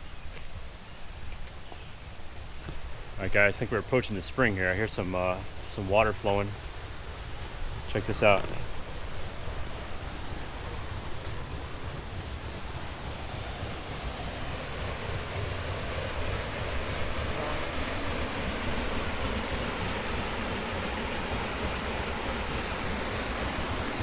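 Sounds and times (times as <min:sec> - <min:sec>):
flowing spring water: 0:00.0 - 0:24.0.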